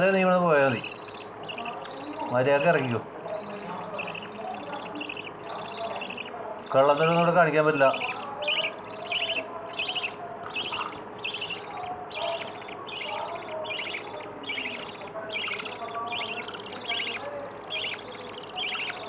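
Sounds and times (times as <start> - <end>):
bird chicks cheeping: 0.0 - 19.0.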